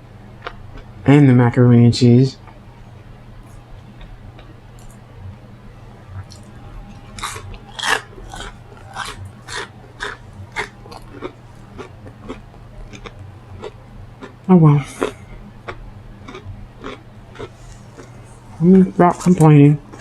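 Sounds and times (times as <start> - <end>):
person chewing crunchy food: 6.1 - 18.9.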